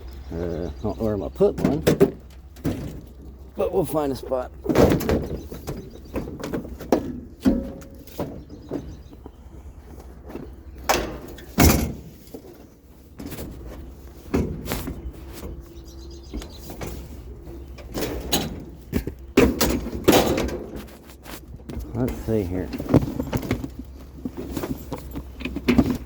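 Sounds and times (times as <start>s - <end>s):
patio chair knocking and scraping: 18.9s - 26.0s.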